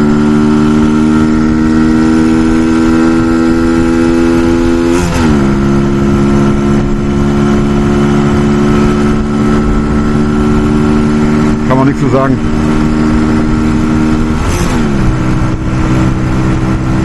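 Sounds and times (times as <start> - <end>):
wind rush on microphone: 0.0 - 17.0.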